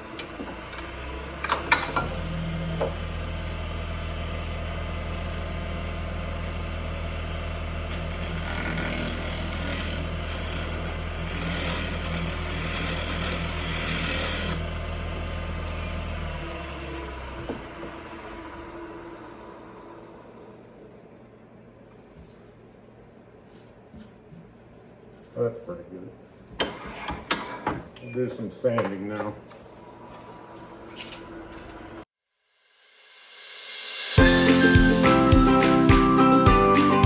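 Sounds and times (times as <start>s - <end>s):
wood lathe motor running: 0.0s - 20.7s
turning tool scraping spinning wood: 7.9s - 14.7s.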